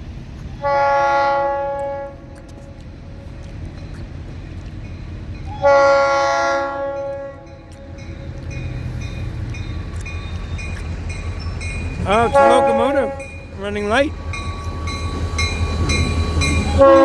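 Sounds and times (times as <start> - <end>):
diesel engine low rumble: 0.0 - 17.0
locomotive horn blast: 0.6 - 2.4, 5.5 - 7.7, 12.0 - 14.2, 15.8 - 17.0.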